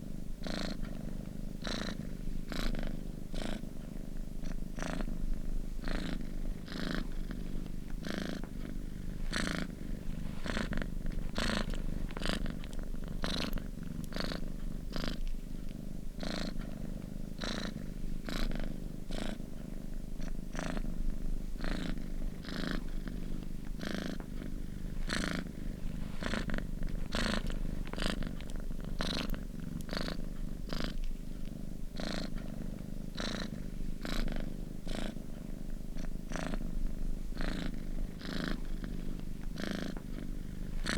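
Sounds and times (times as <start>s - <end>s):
cat purring: 0.0s - 40.9s.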